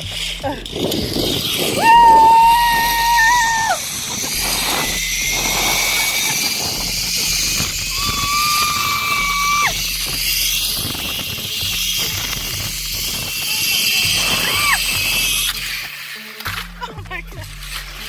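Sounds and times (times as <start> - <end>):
wind rushing over microphone: 0.0 - 15.1.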